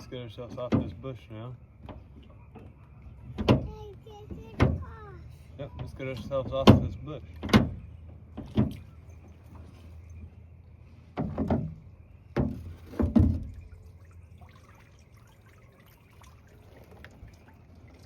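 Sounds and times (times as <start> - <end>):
water splashing: 8.3 - 10.3, 12.3 - 18.0
water trickling and dripping: 12.8 - 18.0.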